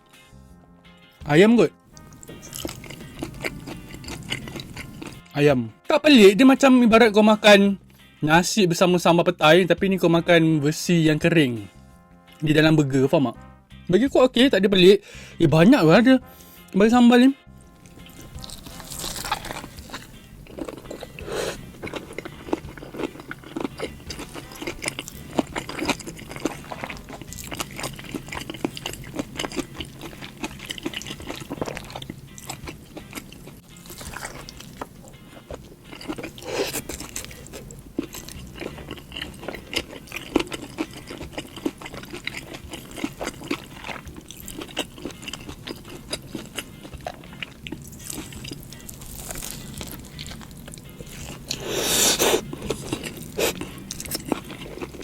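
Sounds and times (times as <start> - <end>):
soft background music: 0.0 - 55.0
biting and chewing: 1.9 - 5.3, 17.7 - 55.0.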